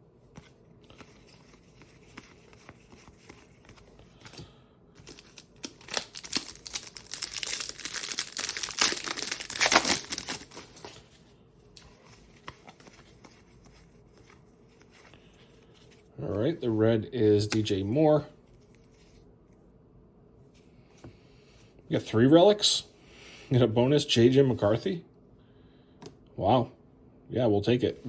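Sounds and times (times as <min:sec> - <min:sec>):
plastic wrapper tearing and crinkling: 0:05.0 - 0:11.0.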